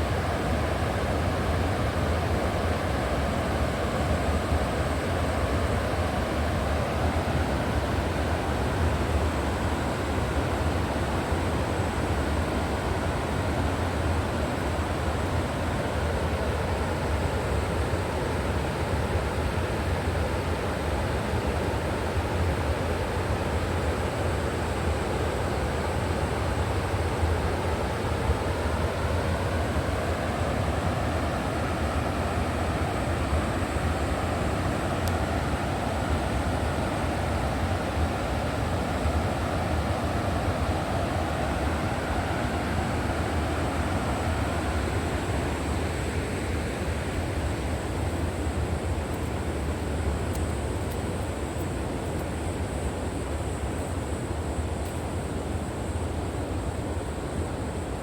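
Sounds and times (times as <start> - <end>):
river water rushing: 26.4 - 54.4.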